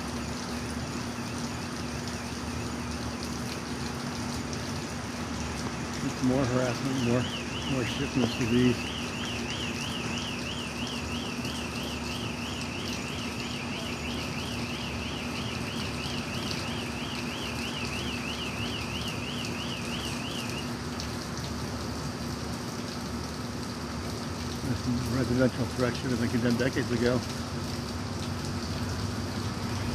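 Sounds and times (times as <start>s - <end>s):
warbling electronic alarm tone: 6.9s - 20.6s.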